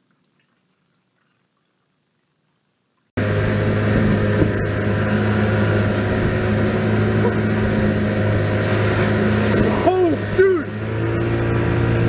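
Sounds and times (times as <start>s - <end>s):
broad rushing noise: 3.2s - 12.0s
engine running with low hum: 3.2s - 12.0s.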